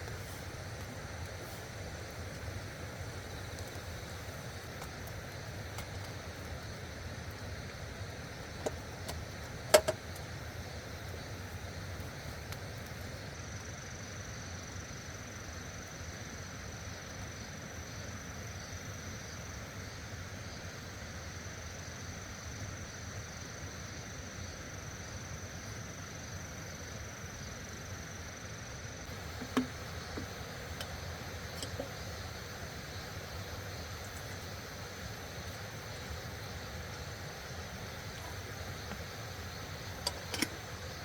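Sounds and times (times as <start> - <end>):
insect high-pitched trill: 26.8 - 41.0.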